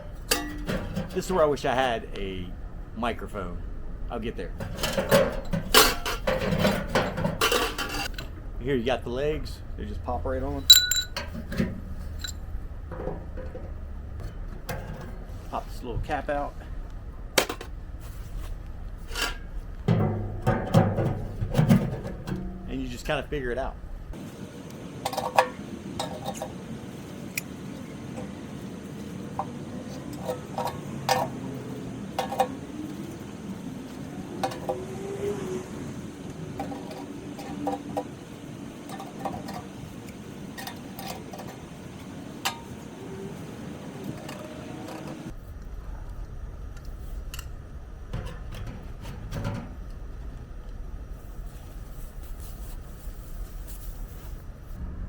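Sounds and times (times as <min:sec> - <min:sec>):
metal stove parts clanking: 0:00.0 - 0:01.6, 0:04.5 - 0:08.4, 0:10.5 - 0:15.6, 0:17.4 - 0:17.8, 0:19.0 - 0:22.8, 0:24.9 - 0:33.4, 0:34.4 - 0:34.8, 0:36.6 - 0:42.8, 0:47.3 - 0:49.9
low background rumble: 0:00.0 - 0:55.0
metal clinks and knocks: 0:10.6 - 0:15.1.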